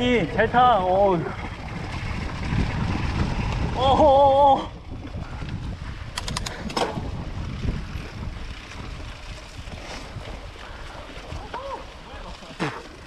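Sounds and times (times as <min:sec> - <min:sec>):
bike tyre rumble: 0:00.0 - 0:13.0
wind noise on microphone: 0:01.2 - 0:11.9
sharp clicks: 0:06.1 - 0:06.9.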